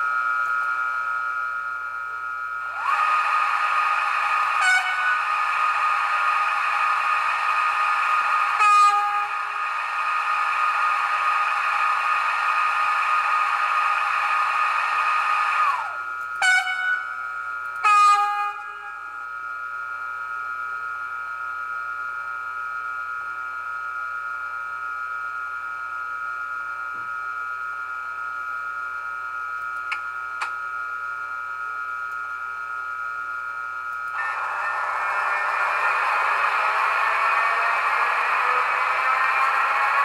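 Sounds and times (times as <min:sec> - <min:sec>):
locomotive running noise: 0:00.0 - 0:19.4, 0:32.1 - 0:40.0
electric hum of locomotive: 0:00.0 - 0:40.0
short horn blasts: 0:04.6 - 0:05.3, 0:08.6 - 0:09.4, 0:16.4 - 0:17.2, 0:17.8 - 0:18.8.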